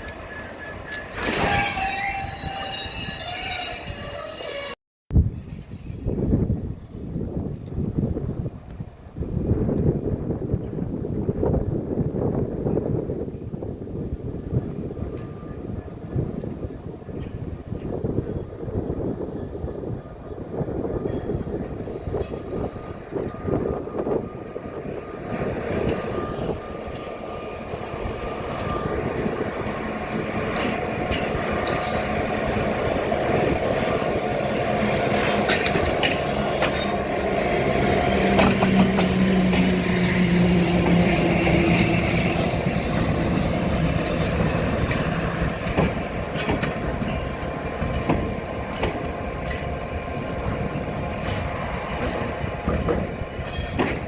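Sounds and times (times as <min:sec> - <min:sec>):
wheel squeal: 0:00.0 - 0:04.8, 0:21.1 - 0:23.4, 0:28.0 - 0:37.1, 0:38.4 - 0:42.3, 0:43.8 - 0:49.8, 0:53.4 - 0:54.0
train wheels rumbling on rail: 0:00.0 - 0:54.0
wheels clicking over rail joints: 0:35.2 - 0:37.4, 0:38.2 - 0:41.7, 0:42.5 - 0:54.0.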